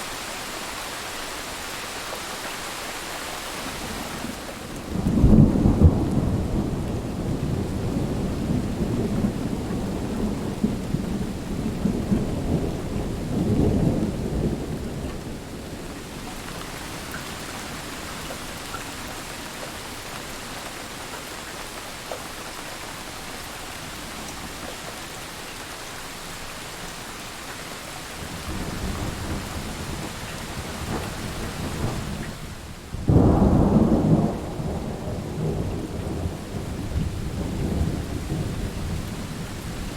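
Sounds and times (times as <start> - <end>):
heavy rain: 0.0 - 39.9
low rolling thunder: 4.8 - 16.2, 28.2 - 39.9
loud crack of thunder: 4.9 - 15.8, 33.0 - 39.4.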